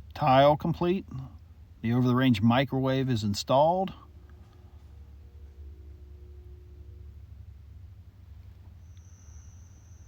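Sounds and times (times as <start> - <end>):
low steady rumble: 0.0 - 10.0
high-pitched insect trill: 8.8 - 10.0.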